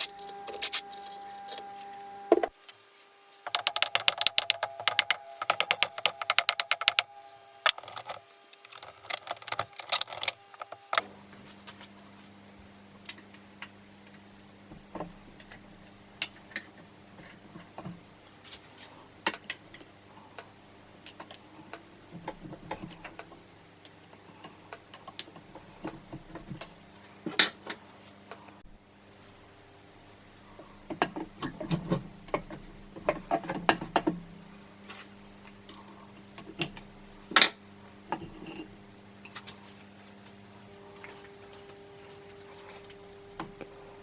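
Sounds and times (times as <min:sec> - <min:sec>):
low steady hum: 0:00.0 - 0:44.0
rapid clicking of tools: 0:03.5 - 0:07.1.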